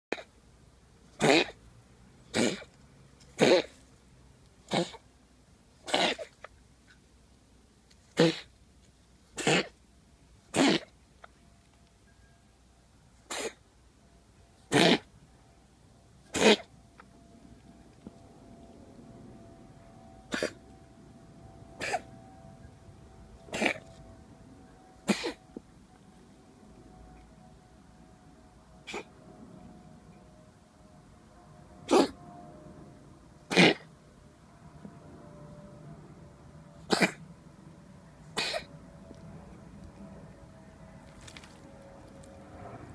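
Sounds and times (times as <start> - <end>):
cat coughing: 1.2 - 1.6, 2.3 - 2.7, 3.4 - 3.8, 4.7 - 5.0, 5.8 - 6.4, 8.2 - 8.5, 9.4 - 9.8, 10.5 - 10.9, 13.3 - 13.6, 14.7 - 15.1, 16.3 - 16.7, 20.3 - 20.6, 21.8 - 22.1, 23.5 - 23.9, 25.0 - 25.4, 28.8 - 29.1, 31.9 - 32.2, 33.5 - 33.9, 36.8 - 37.2, 38.3 - 38.7.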